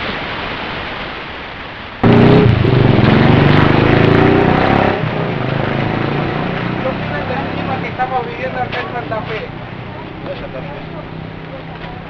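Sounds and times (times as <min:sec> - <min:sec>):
rain hissing: 0:00.0 - 0:12.0
loud low drone: 0:02.0 - 0:09.9.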